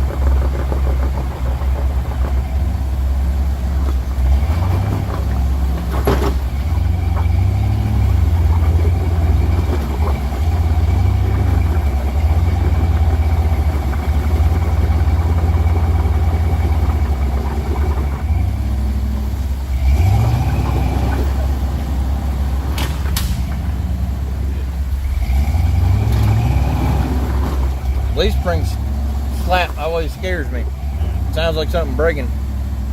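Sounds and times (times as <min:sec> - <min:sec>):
vehicle engine with faint whine: 0:00.0 - 0:32.9
leaf-spring clunks: 0:22.7 - 0:23.8.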